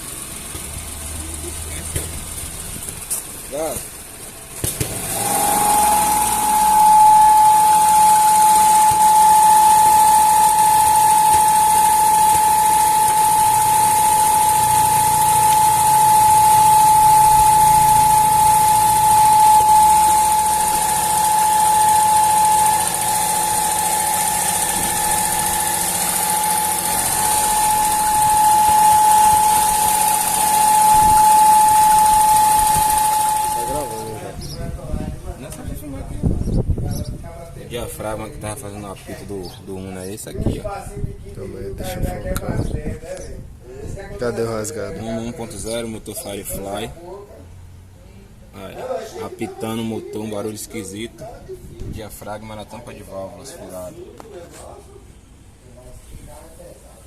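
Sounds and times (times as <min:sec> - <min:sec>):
car engine running: 0:00.0 - 0:34.6
high-pitched whistle: 0:04.9 - 0:34.6.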